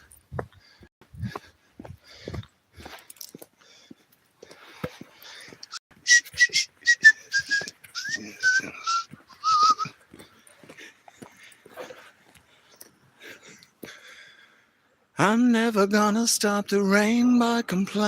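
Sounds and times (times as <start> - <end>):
breathing: 0.5 - 5.7, 10.1 - 15.0
person whistling a tune: 6.0 - 9.9.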